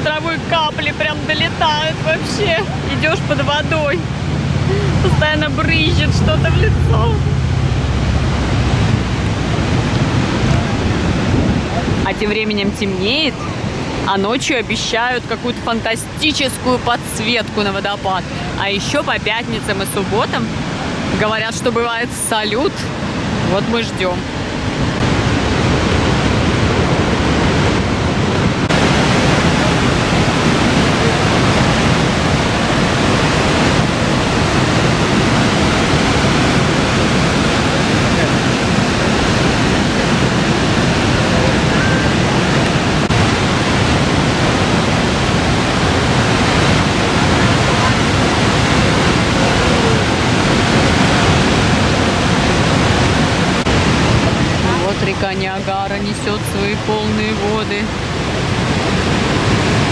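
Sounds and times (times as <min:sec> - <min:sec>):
waterfall roaring: 0:00.0 - 0:59.9.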